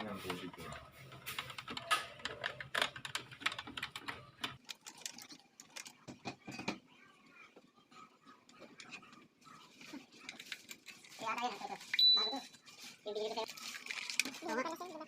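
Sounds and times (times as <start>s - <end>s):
faint voices: 5.2s - 15.0s.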